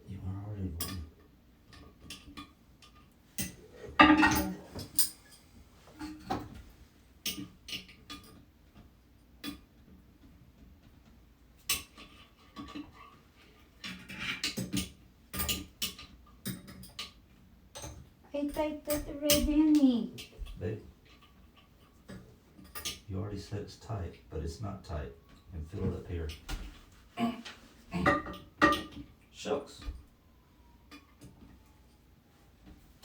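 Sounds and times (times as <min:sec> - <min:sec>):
metal tools clinking and knocking: 0:03.4 - 0:05.4.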